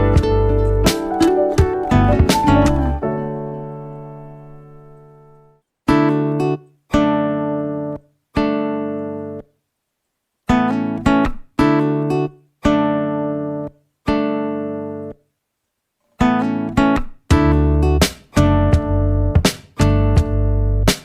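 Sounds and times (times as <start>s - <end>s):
strummed acoustic guitar chords: 0.0s - 4.6s, 16.2s - 21.0s.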